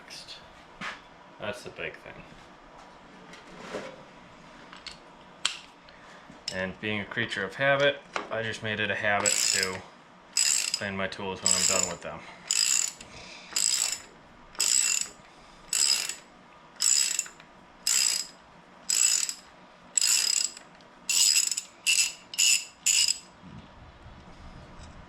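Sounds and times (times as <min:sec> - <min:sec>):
socket ratchet clicking: 0:09.2 - 0:09.8, 0:10.4 - 0:10.8, 0:11.5 - 0:13.0, 0:13.6 - 0:16.2, 0:16.8 - 0:19.4, 0:20.0 - 0:23.3.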